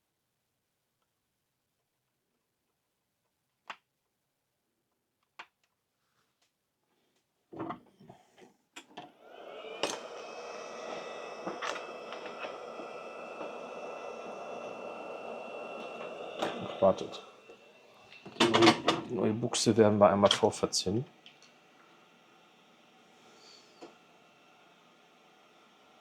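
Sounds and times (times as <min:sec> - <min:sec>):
hot-air blower whine and rush: 0:09.0 - 0:26.0.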